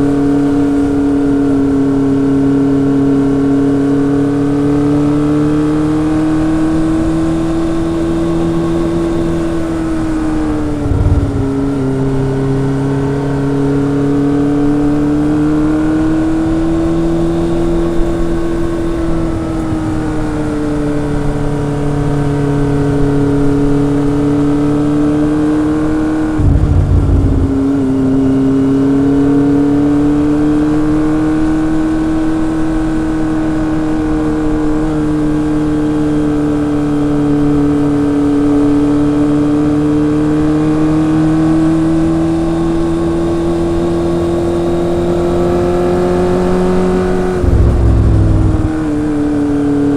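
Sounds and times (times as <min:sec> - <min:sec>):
motorcycle engine and exhaust: 0:00.0 - 0:49.9
short rush of noise: 0:26.4 - 0:28.0, 0:47.4 - 0:49.0.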